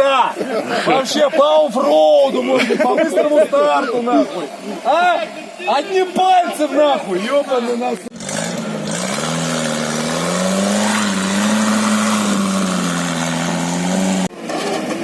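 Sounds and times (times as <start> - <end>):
van engine revving under load: 8.1 - 15.0.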